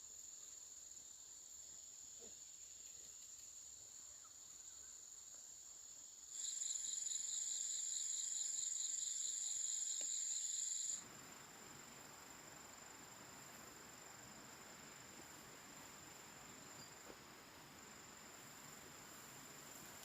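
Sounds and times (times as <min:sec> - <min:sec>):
insects trilling drone: 0:00.0 - 0:20.0
pulsing insect call: 0:06.3 - 0:20.0.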